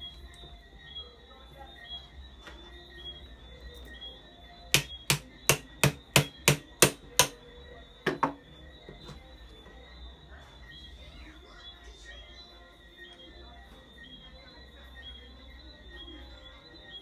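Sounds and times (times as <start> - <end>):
sharp hammer strikes: 4.8 - 7.4.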